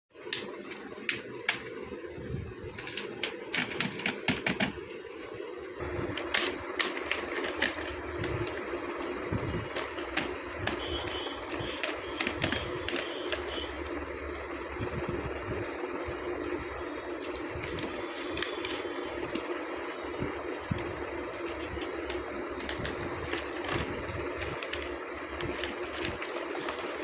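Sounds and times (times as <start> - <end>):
steady low hum: 0.1 - 27.0
packaging crinkling: 2.8 - 4.4, 6.0 - 9.1, 9.7 - 13.7, 17.2 - 19.8, 20.7 - 27.0.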